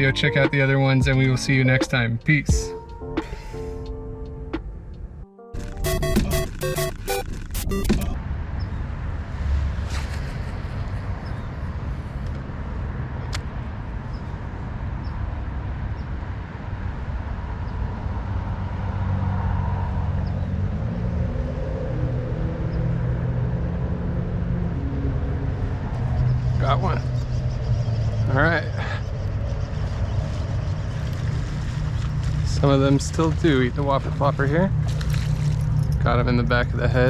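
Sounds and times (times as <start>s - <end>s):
engine hum: 0.0s - 37.0s
road traffic rumble: 0.0s - 37.0s.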